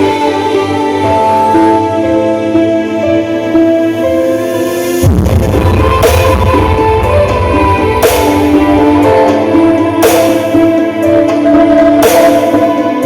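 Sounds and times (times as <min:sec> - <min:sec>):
heavy bass: 0:05.0 - 0:13.0.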